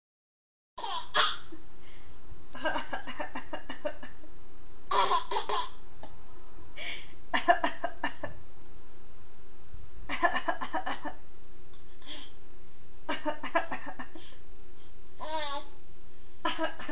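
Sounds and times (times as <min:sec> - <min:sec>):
baby laughing: 0:00.8 - 0:01.5, 0:04.9 - 0:05.8.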